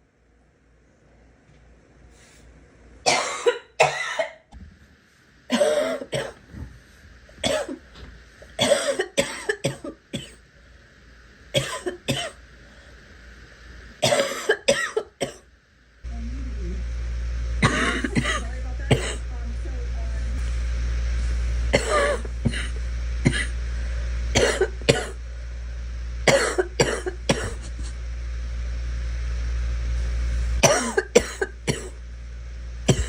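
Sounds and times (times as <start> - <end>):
girl coughing: 3.1 - 4.4, 5.5 - 6.4, 7.4 - 7.8, 8.6 - 10.4, 11.6 - 12.4, 14.0 - 15.4, 17.6 - 19.2, 21.7 - 23.5, 24.4 - 25.2, 26.3 - 27.8, 30.6 - 32.0
low rumble: 16.0 - 26.2.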